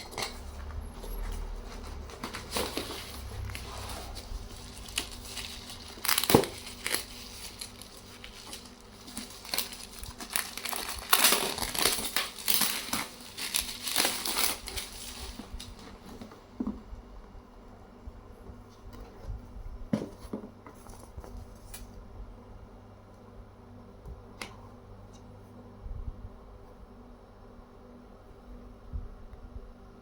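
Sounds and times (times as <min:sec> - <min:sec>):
plastic wrap crinkling: 0:00.0 - 0:16.3.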